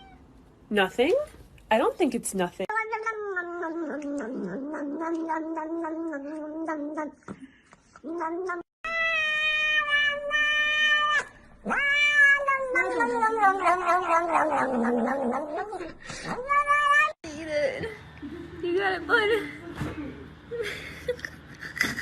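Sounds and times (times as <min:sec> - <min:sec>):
cat yowling: 0:08.1 - 0:17.2.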